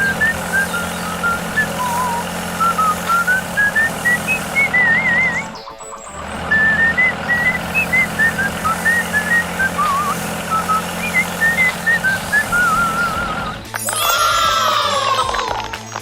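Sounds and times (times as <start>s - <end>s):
low engine-like hum: 0.0s - 13.8s
whistled tune with trills: 0.0s - 16.0s.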